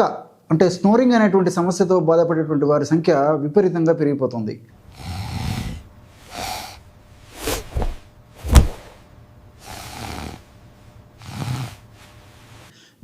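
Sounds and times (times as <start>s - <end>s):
loud snort: 4.8s - 7.7s, 9.6s - 10.5s, 11.2s - 12.7s
person snoring: 4.8s - 7.8s, 9.6s - 10.5s, 11.2s - 12.7s.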